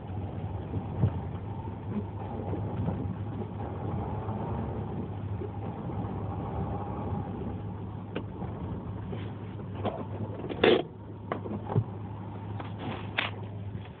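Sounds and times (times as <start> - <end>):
wavering whir: 0.0 - 9.6
car engine running: 0.0 - 14.0.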